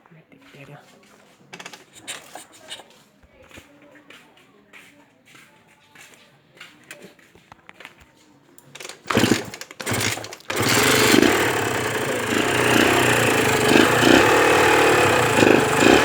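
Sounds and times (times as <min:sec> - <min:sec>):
two-stroke engine revving: 0:08.8 - 0:16.0.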